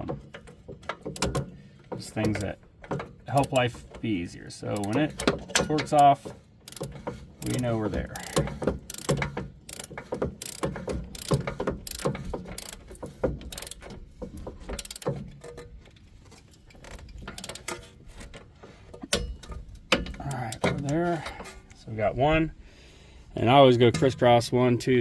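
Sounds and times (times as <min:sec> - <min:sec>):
torque wrench clicking: 0:06.6 - 0:13.9, 0:14.8 - 0:15.1.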